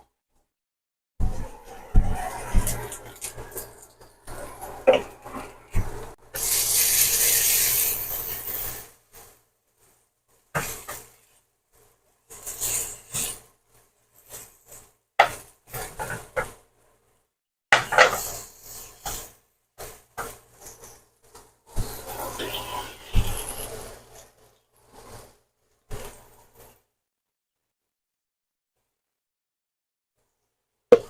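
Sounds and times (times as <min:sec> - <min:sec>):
loud hiss: 0:06.4 - 0:08.8.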